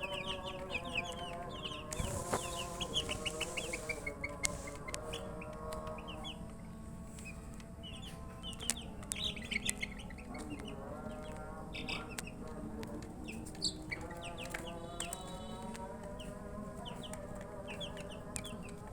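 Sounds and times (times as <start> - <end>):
lower steady chick calls: 0.0 - 5.3
baby chicks chirping: 0.0 - 6.5, 7.1 - 18.9.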